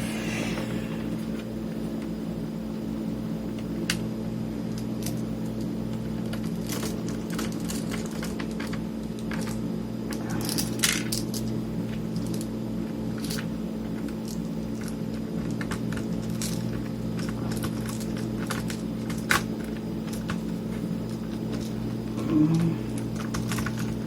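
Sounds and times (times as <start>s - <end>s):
steady low hum: 0.0s - 6.3s.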